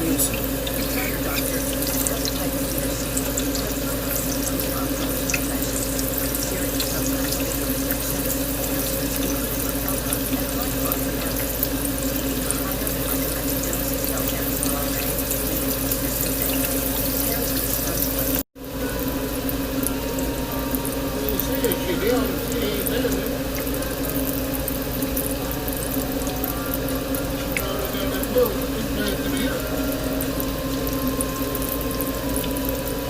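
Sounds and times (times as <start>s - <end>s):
constant low hum: 0.0s - 33.0s
vegetables sizzling in hot oil: 0.0s - 33.0s.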